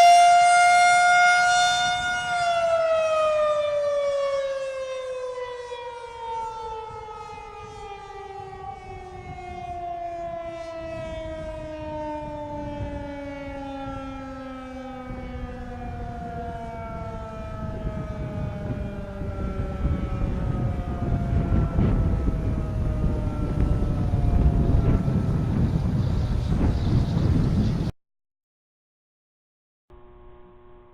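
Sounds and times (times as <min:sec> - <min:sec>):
siren winding down: 0:00.0 - 0:27.4
wind noise on microphone: 0:01.6 - 0:02.6, 0:06.8 - 0:14.4, 0:15.0 - 0:28.0.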